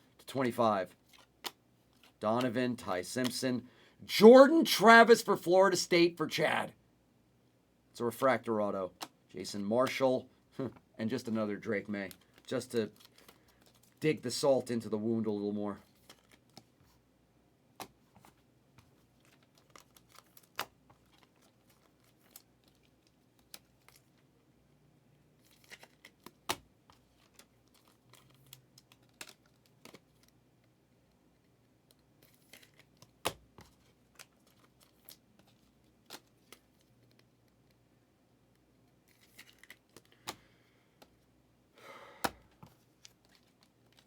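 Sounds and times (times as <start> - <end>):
wrapper tearing and crinkling: 39.1 - 40.0.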